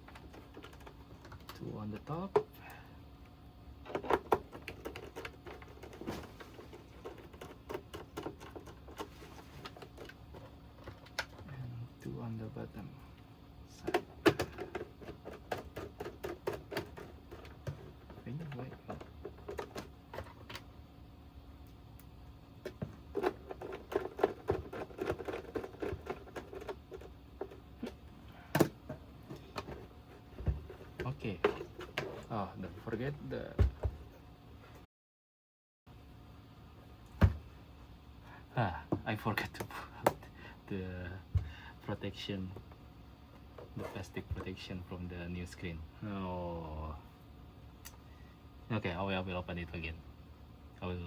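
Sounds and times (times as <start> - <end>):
hands handling plastic housing: 22.6 - 32.3.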